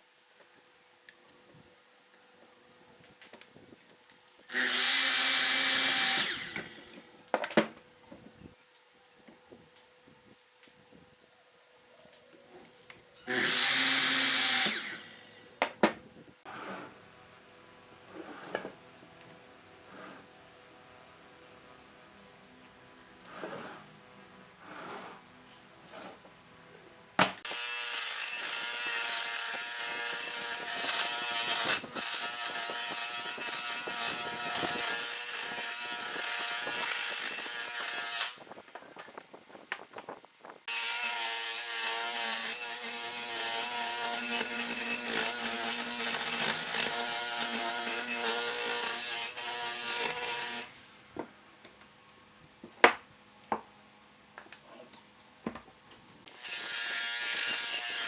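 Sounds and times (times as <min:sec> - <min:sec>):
power tool grinding wood: 0:04.5 - 0:07.1, 0:13.3 - 0:15.4, 0:27.4 - 0:38.6, 0:40.7 - 0:50.8, 0:56.3 - 0:58.0.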